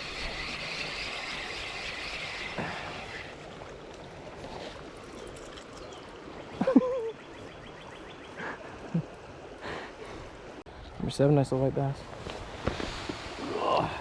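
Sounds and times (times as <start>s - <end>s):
river water splashing: 0.0s - 10.6s.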